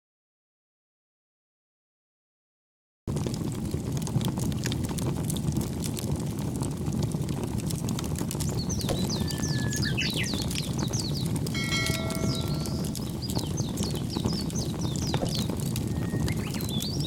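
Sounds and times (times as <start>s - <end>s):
birds chirping: 8.4s - 17.0s
low rumble: 8.6s - 17.0s.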